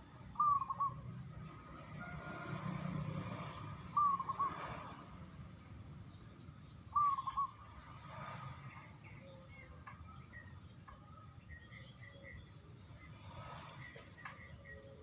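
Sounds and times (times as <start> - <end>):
small birds chirping faintly: 0.0 - 15.0
dove cooing: 0.4 - 1.0.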